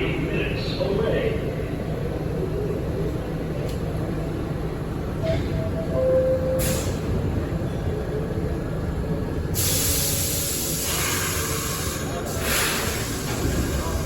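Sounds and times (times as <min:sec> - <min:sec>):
subway car rumbling: 0:00.0 - 0:14.0
air brakes hissing: 0:06.5 - 0:07.2, 0:09.5 - 0:14.0.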